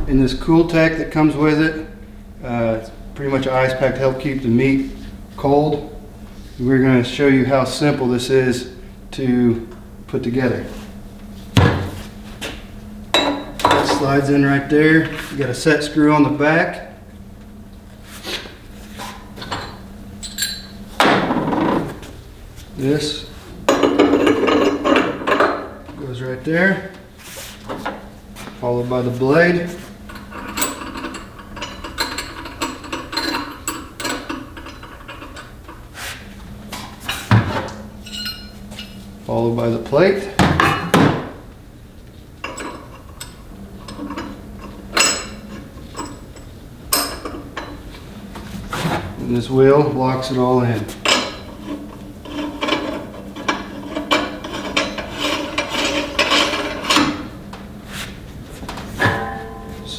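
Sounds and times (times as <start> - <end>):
metal ring scraping on metal: 51.0 - 57.4, 59.0 - 59.9.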